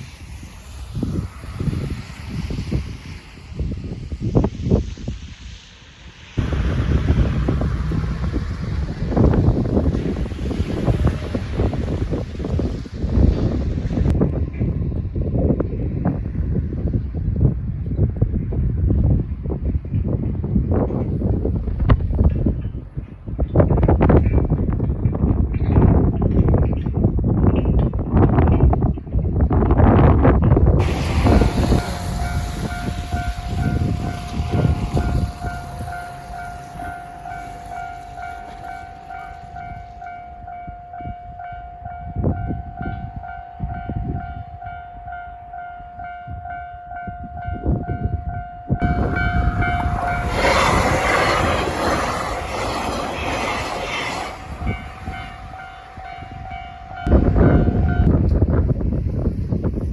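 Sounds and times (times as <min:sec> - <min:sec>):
wind buffeting microphone: 0:00.0 - 0:05.7, 0:06.3 - 0:59.9
train rushing past: 0:00.0 - 0:26.1, 0:30.4 - 0:59.9
level crossing warning bell: 0:30.8 - 0:52.8, 0:53.4 - 0:58.4.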